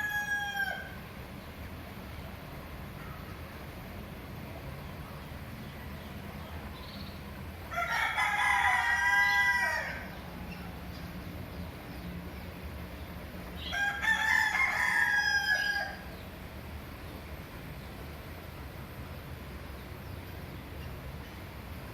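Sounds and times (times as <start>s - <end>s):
steady low hum: 0.0s - 9.0s, 9.8s - 21.9s
bird long calls: 2.9s - 3.6s.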